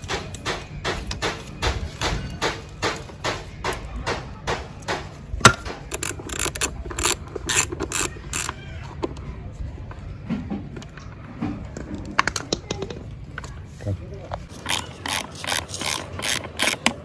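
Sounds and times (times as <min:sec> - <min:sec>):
hand tool rhythmic mechanical strokes: 0:14.5 - 0:17.0.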